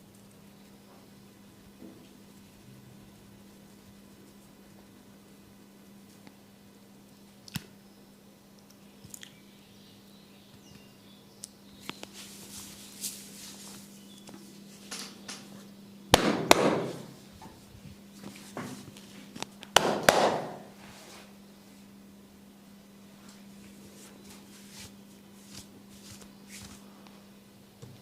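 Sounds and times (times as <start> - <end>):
steady low hum: 0.0 - 28.0
short rustle: 11.9 - 14.9
sharp head-massage knocks: 16.1 - 17.1, 19.8 - 20.7.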